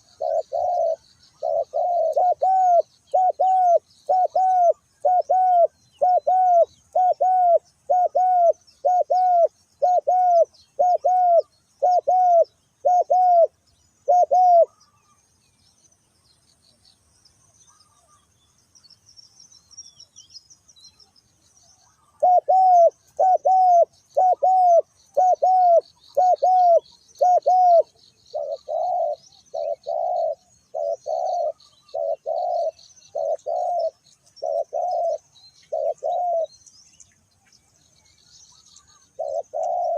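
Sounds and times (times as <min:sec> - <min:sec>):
dove cooing: 0:00.0 - 0:15.0, 0:21.9 - 0:36.6, 0:38.6 - 0:39.9
small birds chirping faintly: 0:00.0 - 0:39.9.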